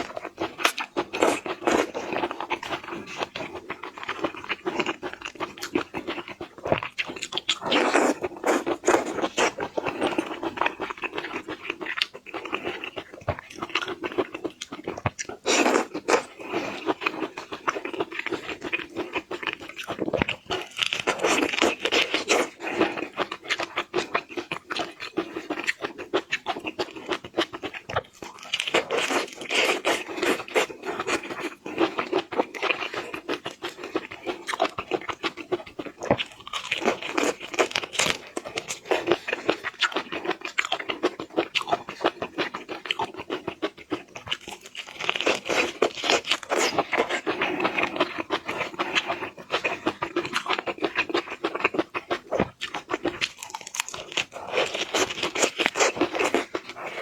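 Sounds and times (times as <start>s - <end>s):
person chewing and crunching: 0.0s - 57.0s.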